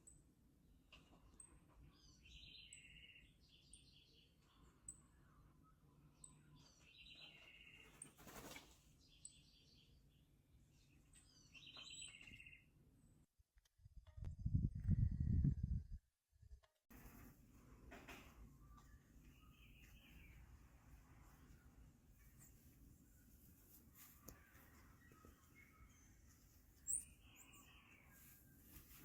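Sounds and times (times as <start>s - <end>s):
birds chirping: 1.4s - 12.7s, 18.1s - 29.0s.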